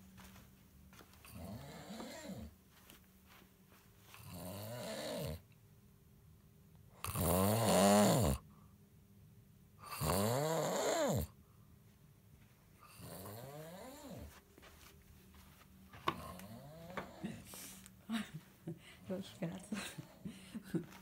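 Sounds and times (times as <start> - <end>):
man snoring: 1.3 - 2.5, 4.2 - 5.4, 7.0 - 8.4, 9.8 - 11.3, 12.9 - 14.3, 16.2 - 17.2.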